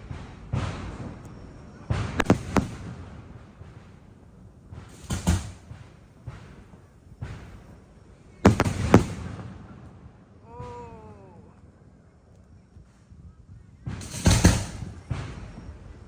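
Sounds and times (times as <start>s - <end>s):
firework shells bursting: 0.0s - 10.0s, 13.9s - 16.0s.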